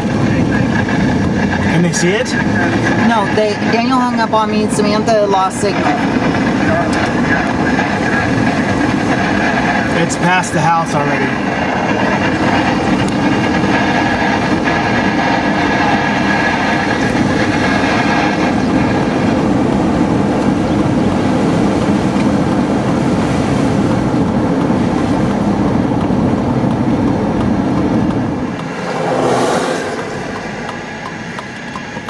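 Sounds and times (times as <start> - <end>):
road and tyre noise: 0.0 - 32.0
brief rushing swell: 28.5 - 31.0.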